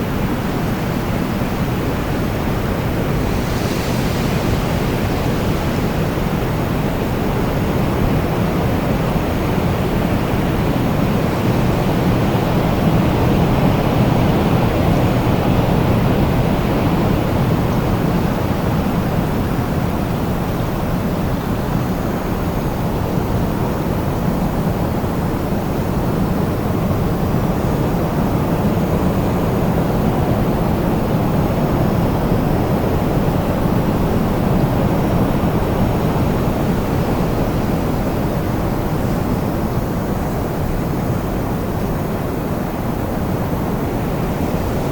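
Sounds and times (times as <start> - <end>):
wind blowing: 1.7 - 8.5.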